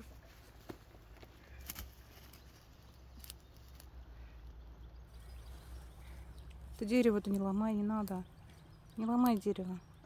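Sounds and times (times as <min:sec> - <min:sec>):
wooden sticks clicking and snapping: 0:06.4 - 0:09.6.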